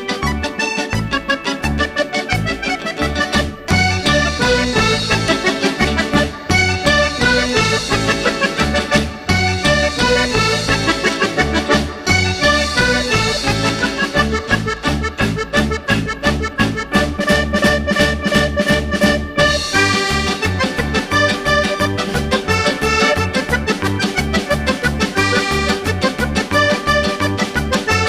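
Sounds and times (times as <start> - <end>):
accordion music with beat and bass: 0.0 - 28.0.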